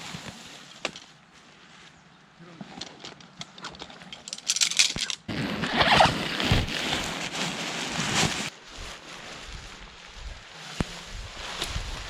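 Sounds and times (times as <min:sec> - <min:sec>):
rustling and handling noise: 0:00.0 - 0:12.0
zipper pulled: 0:05.3 - 0:07.2.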